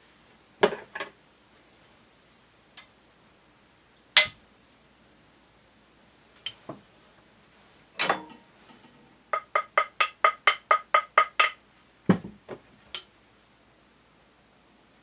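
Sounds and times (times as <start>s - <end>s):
hammer tapping on metal: 9.3s - 11.6s.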